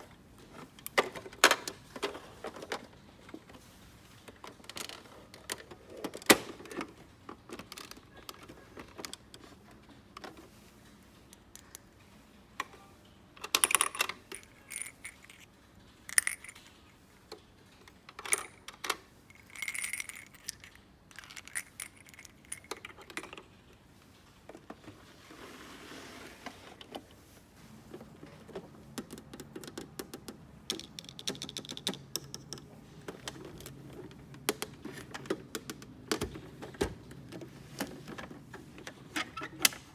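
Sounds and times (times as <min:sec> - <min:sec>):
plastic toy pieces clicking: 0:16.1 - 0:16.7, 0:18.1 - 0:23.4, 0:29.0 - 0:32.7.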